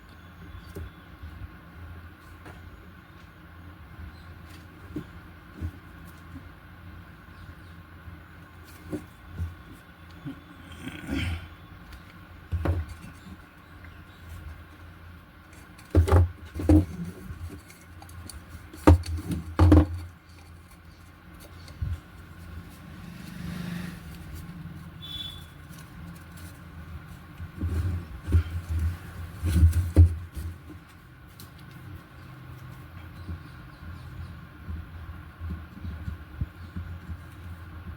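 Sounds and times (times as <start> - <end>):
faint background hum: 0.0 - 37.9
thumps and knocks on a workbench: 18.8 - 20.0.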